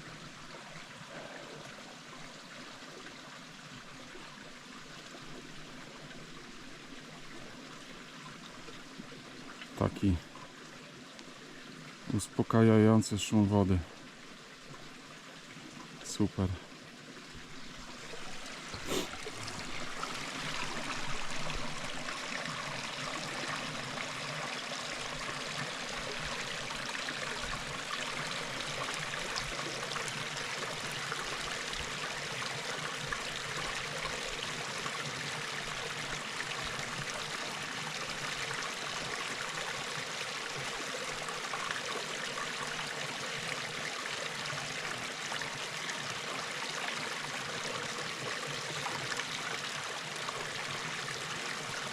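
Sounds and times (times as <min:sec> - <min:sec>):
stream rushing over rocks: 0:15.7 - 0:51.9.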